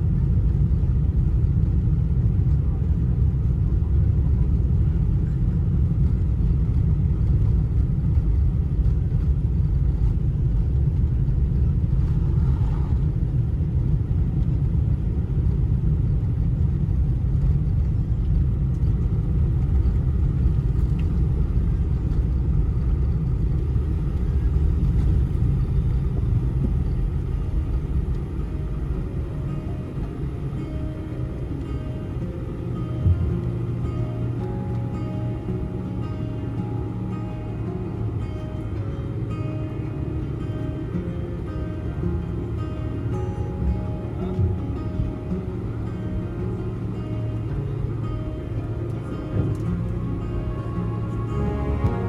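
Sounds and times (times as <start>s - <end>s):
aircraft cabin engine rumble: 0.0s - 52.0s.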